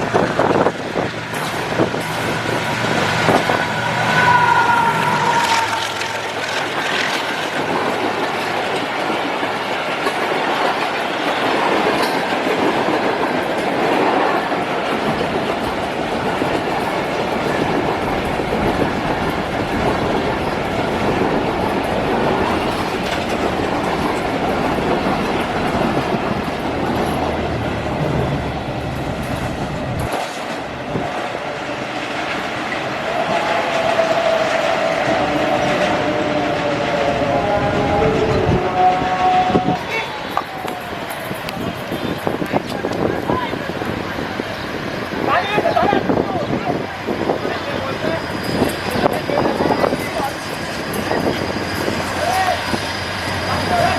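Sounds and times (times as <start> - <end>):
train wheels clattering over rail joints: 5.2 - 36.4.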